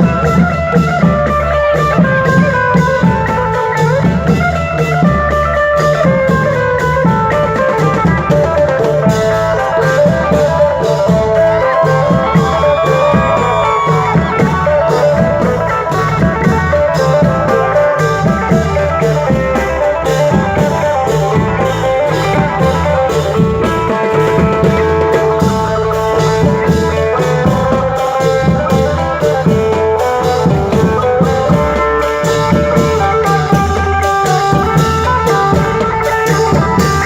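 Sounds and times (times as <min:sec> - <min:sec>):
steady drum beat: 0:00.0 - 0:37.0.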